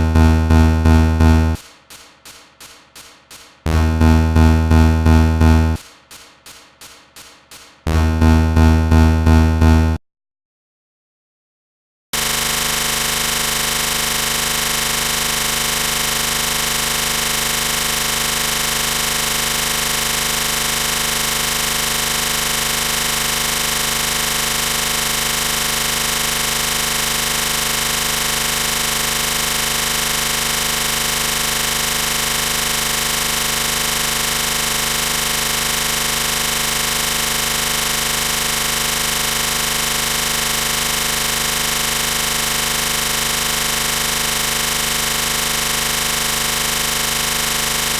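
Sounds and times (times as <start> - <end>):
mri scanner drone: 0.0 - 1.6.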